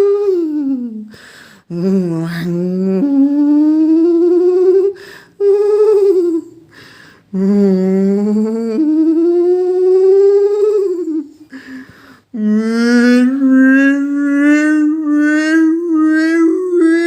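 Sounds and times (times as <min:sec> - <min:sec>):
man imitating engine with voice: 0:12.4 - 0:17.0.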